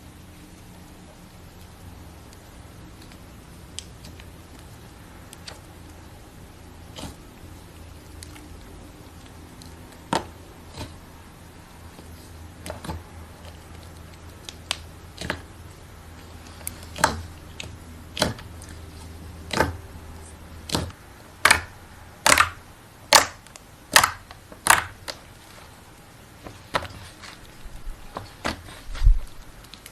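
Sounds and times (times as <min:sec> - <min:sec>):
slime popping and clicking: 0:20.6 - 0:25.2.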